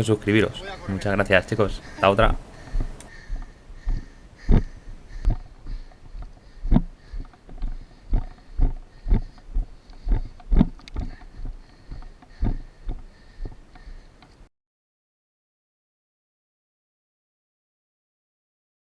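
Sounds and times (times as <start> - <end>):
faint steady hiss: 0.0 - 9.9
dull thumps: 0.0 - 14.4.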